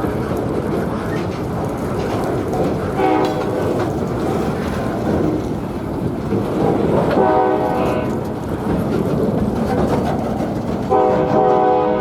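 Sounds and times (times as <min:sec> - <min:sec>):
train rumbling on rails: 0:00.0 - 0:12.0
locomotive air horn blast: 0:03.0 - 0:03.8, 0:07.2 - 0:08.2, 0:10.9 - 0:12.0.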